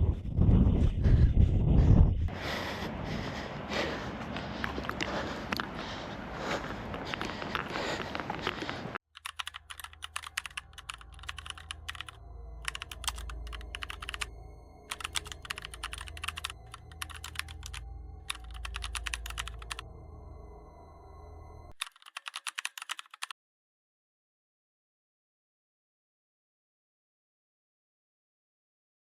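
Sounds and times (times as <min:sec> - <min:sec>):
rapid clicking: 0:08.4 - 0:14.3, 0:14.9 - 0:19.8, 0:21.7 - 0:23.3.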